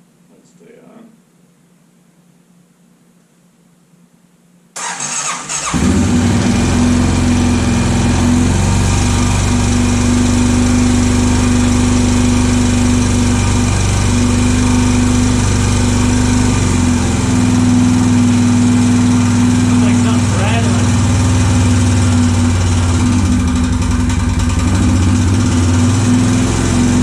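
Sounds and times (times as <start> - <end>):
motorcycle engine cranking: 4.8 - 6.3
motorcycle engine running: 4.8 - 27.0.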